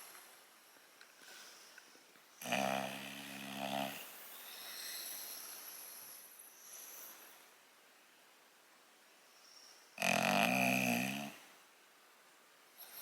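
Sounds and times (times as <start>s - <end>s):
dog snoring: 2.4s - 5.5s, 10.0s - 11.5s.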